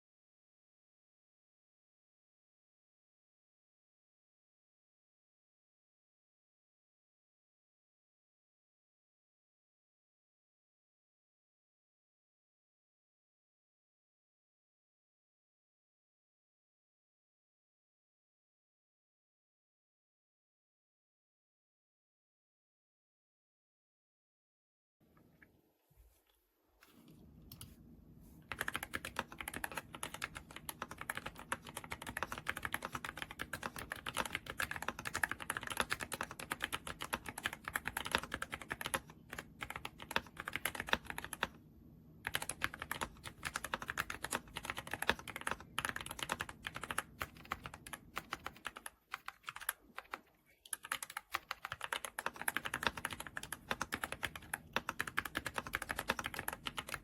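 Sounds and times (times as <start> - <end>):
mechanical keyboard typing: 28.5 - 41.6, 42.2 - 57.0.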